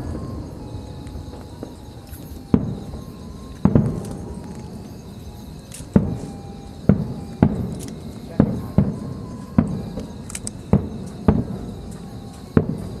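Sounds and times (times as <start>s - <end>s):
distant fireworks rumble: 0.0s - 13.0s
fireworks bangs: 0.0s - 13.0s.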